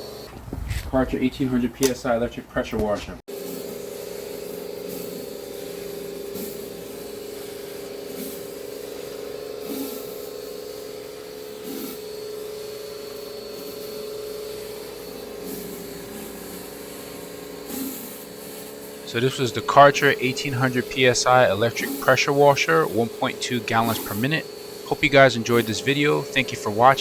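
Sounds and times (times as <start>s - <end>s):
pressure washer motor humming: 3.3s - 27.0s
water spray hissing: 19.1s - 27.0s.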